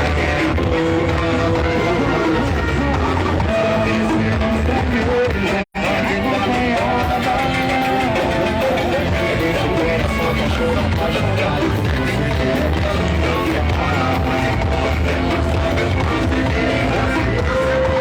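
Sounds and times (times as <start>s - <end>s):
loud music with guitar and singing: 0.0s - 18.0s.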